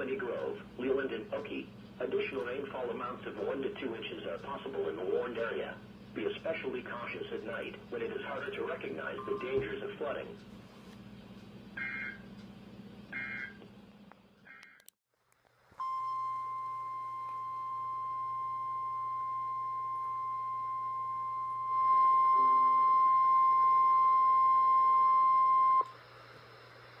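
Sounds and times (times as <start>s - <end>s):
steady warning alarm beep: 9.2s - 9.6s, 11.8s - 12.3s, 13.1s - 13.6s, 15.8s - 25.9s
low steady hum: 15.4s - 27.0s.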